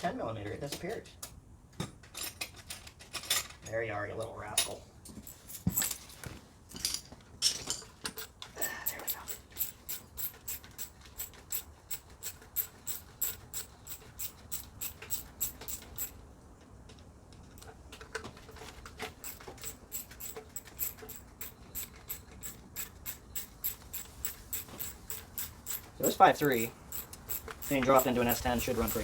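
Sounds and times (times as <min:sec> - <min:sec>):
ratchet wrench clicking: 0:08.1 - 0:16.2, 0:19.1 - 0:29.0.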